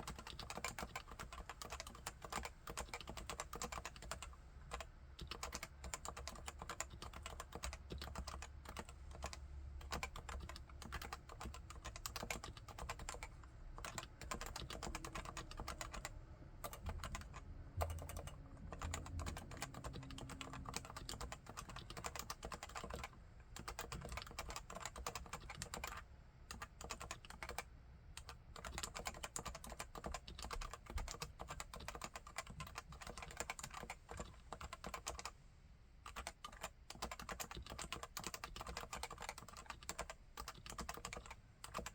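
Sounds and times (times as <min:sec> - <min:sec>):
fast keyboard typing: 0:00.0 - 0:35.3, 0:36.1 - 0:41.9.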